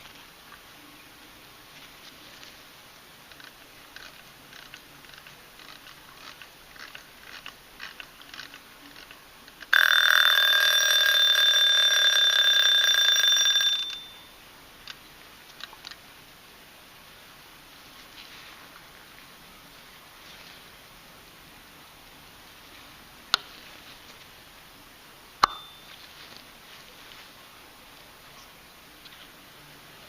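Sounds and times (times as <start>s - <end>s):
alarm clock bell ringing: 9.7s - 14.3s, 25.4s - 25.9s.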